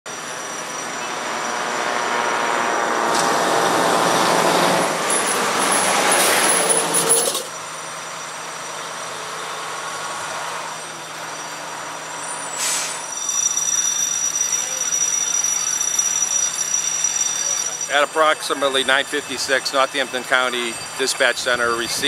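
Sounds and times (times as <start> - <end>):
high brake squeal: 0.1 - 3.3, 4.3 - 22.0
heavy truck running: 0.1 - 22.0
air brake hiss: 12.4 - 13.1.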